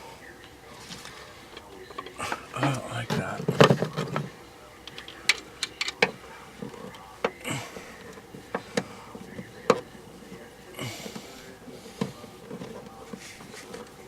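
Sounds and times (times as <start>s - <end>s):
clicks and knocks of handled parts: 3.4s - 7.4s.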